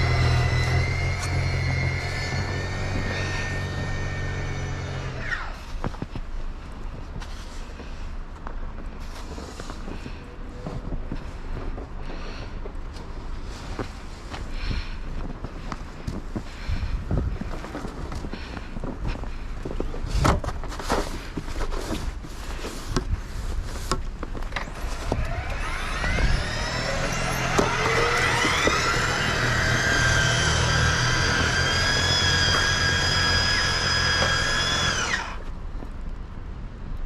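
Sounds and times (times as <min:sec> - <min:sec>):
small motor whining: 0:00.0 - 0:05.7, 0:24.6 - 0:35.5.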